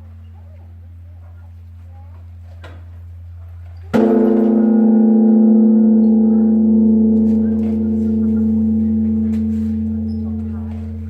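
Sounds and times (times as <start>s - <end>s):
large bronze bell ringing: 3.9s - 11.0s.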